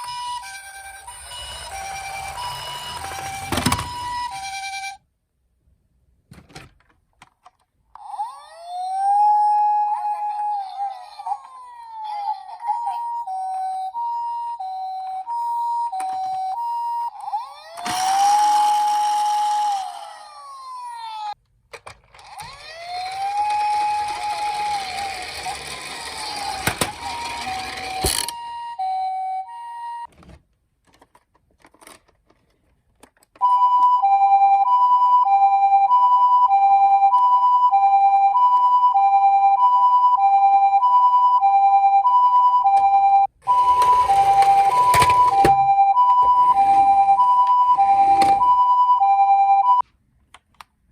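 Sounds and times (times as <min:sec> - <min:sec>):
wailing siren: 0:00.0 - 0:04.8, 0:08.0 - 0:21.4, 0:22.4 - 0:30.1, 0:34.0 - 0:49.8
two-tone hi-lo siren: 0:00.0 - 0:05.0, 0:08.2 - 0:10.6, 0:12.8 - 0:21.4, 0:22.4 - 0:30.1, 0:33.5 - 0:49.8.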